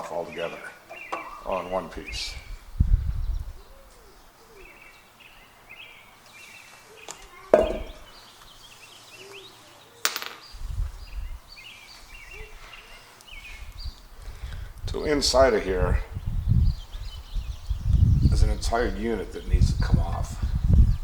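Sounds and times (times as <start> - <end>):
birds chirping: 0.1 - 21.0
low handling thumps: 7.6 - 8.0.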